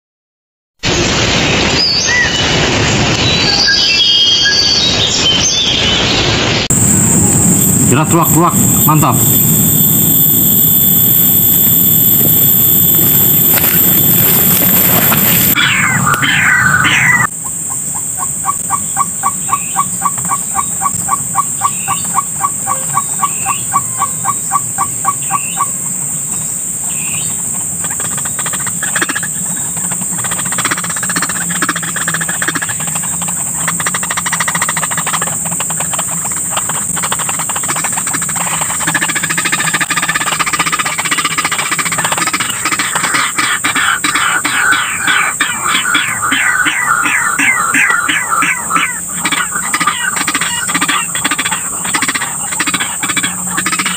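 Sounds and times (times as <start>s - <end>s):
high insect drone: 6.7s - 53.9s
bird calling rapidly: 12.7s - 25.8s, 26.9s - 53.9s.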